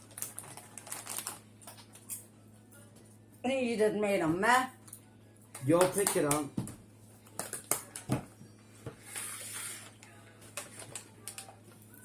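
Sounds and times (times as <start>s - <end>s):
snack bag rustling: 0.0s - 2.2s.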